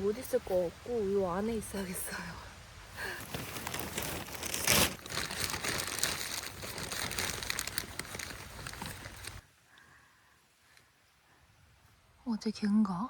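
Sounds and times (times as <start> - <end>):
crinkly material rustling: 3.0 - 9.4
loud crunch: 3.2 - 9.4.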